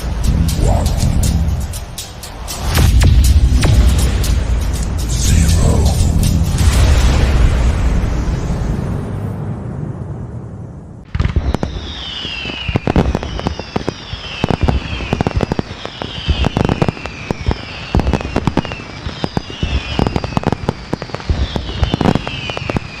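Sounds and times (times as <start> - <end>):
fireworks cracking and popping: 11.1 - 23.0
firework whistle falling in pitch: 11.2 - 23.0.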